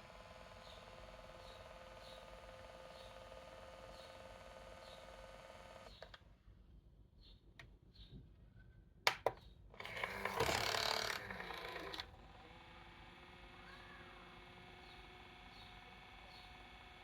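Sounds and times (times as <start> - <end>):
motor whine: 0.0 - 6.0, 9.8 - 17.0.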